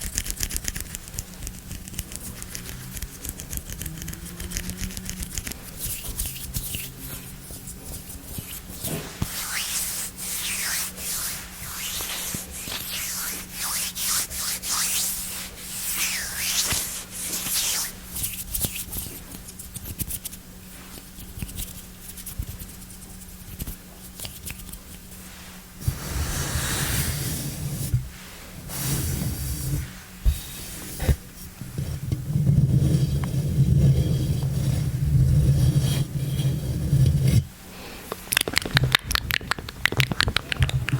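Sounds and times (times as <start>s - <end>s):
hands rubbing: 0.0s - 27.6s.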